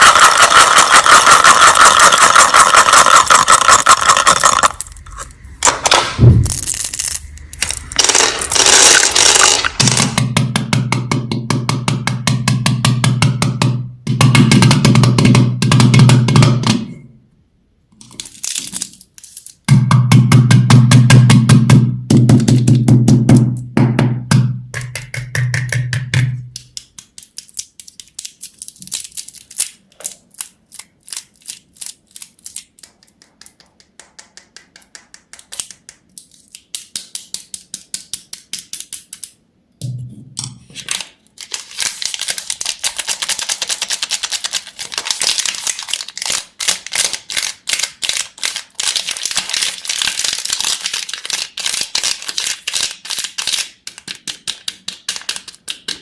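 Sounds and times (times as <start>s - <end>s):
candy wrapper crackling: 0.0s - 10.2s, 18.0s - 19.7s, 26.6s - 33.6s, 40.8s - 56.0s.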